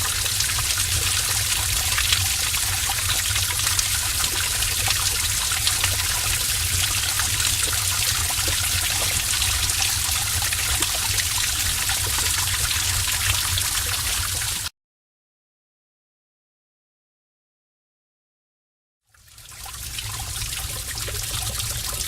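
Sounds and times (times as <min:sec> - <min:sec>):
water rushing and splashing: 0:00.0 - 0:14.7.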